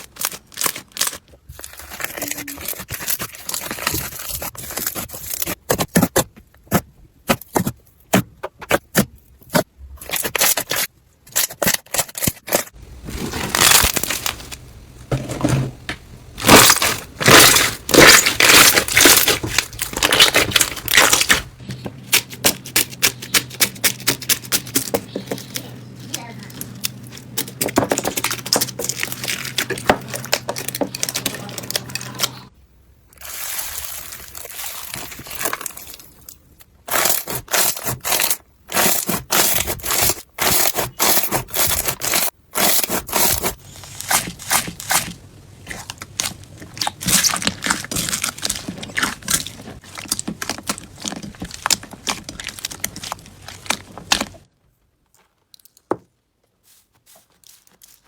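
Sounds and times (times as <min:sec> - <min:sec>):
slime crackling and popping: 0:16.4 - 0:21.5, 0:43.9 - 0:54.5.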